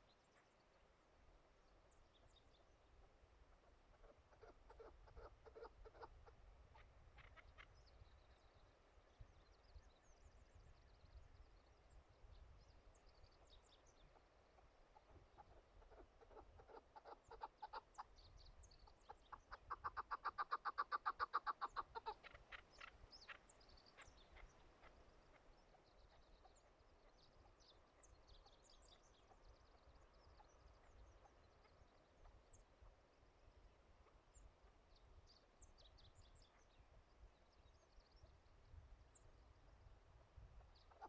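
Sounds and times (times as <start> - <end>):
small birds chirping: 0.0 - 41.0
partridge clucking calls: 3.9 - 7.7, 14.1 - 18.1, 18.8 - 27.6, 40.7 - 41.0.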